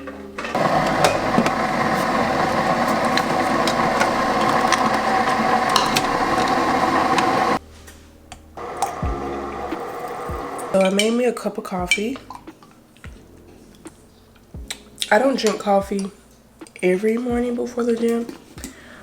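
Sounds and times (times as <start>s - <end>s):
kitchen appliance motor running: 0.6s - 7.6s, 8.6s - 10.8s.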